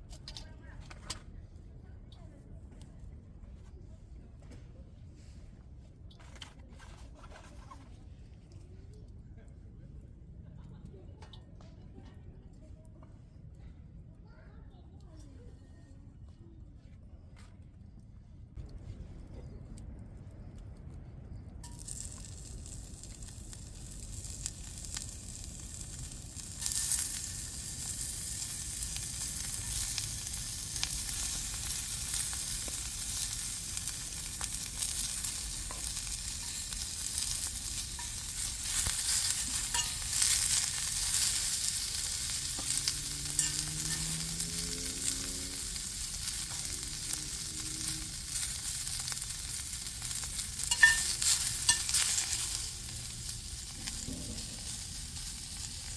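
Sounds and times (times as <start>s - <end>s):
campfire crackling: 18.6s - 55.9s
food sizzling in a skillet: 21.6s - 55.9s.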